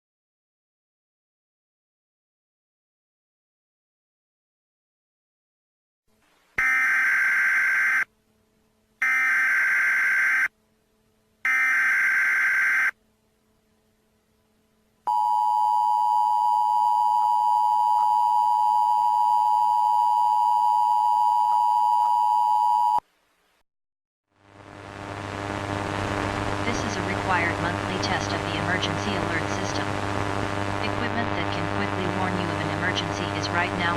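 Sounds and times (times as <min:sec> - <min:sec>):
buzzy data bursts: 0:24.5 - 0:33.9.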